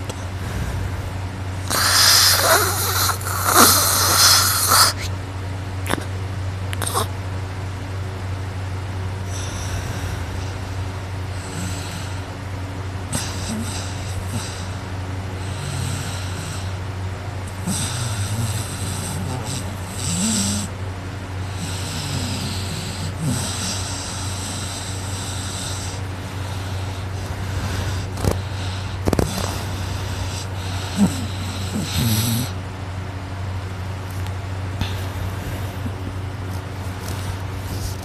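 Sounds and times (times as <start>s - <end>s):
man snoring loudly: 0.0s - 5.1s, 9.2s - 12.4s, 13.1s - 16.8s, 17.4s - 20.8s, 21.4s - 32.6s.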